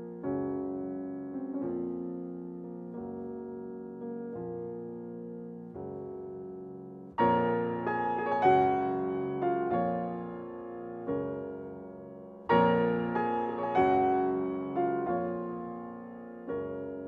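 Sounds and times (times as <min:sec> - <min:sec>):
slow piano chords: 0:00.0 - 0:17.0.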